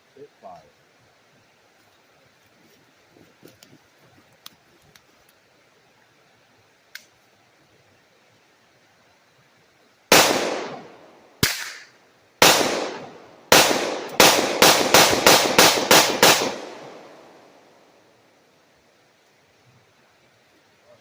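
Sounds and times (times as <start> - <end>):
gunshots with echo: 10.1 - 17.4.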